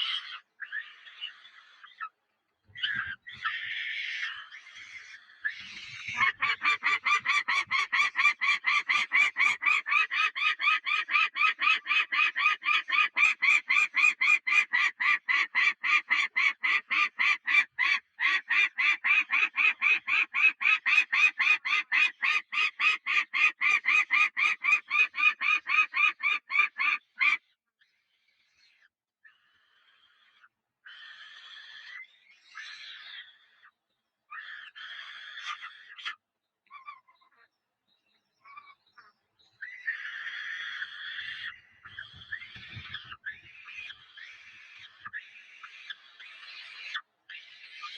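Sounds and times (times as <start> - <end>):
nestling birds begging calls: 0.0 - 27.4, 38.4 - 47.9.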